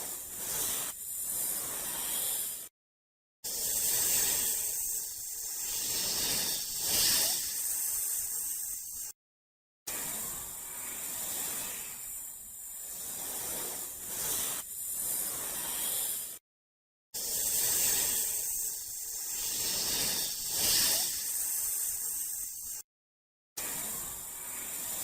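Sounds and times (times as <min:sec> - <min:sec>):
snake hissing: 0:00.4 - 0:02.6, 0:03.5 - 0:09.2, 0:17.2 - 0:22.8.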